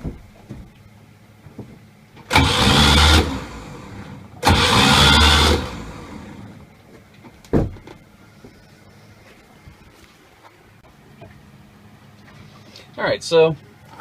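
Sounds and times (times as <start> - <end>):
engine starter cranking: 2.2 - 6.5.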